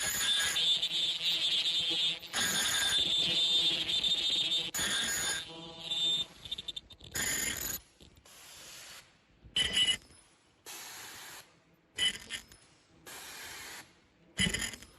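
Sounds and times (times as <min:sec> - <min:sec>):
machine air hiss bursts: 0:08.2 - 0:09.1, 0:10.7 - 0:11.5, 0:13.1 - 0:13.9.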